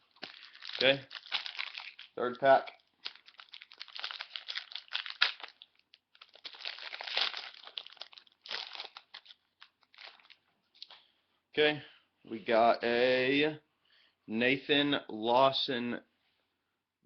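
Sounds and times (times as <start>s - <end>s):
wrapper tearing and crinkling: 0.1s - 10.4s.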